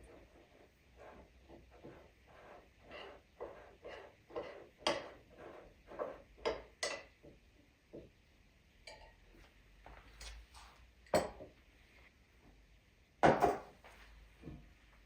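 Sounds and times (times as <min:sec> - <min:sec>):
utensils knocking and scraping: 0:02.8 - 0:07.4.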